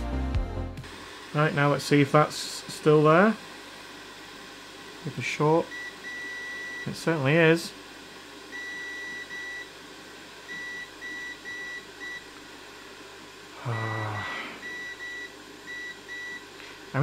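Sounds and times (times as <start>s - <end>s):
low vocal murmur: 13.6s - 14.6s.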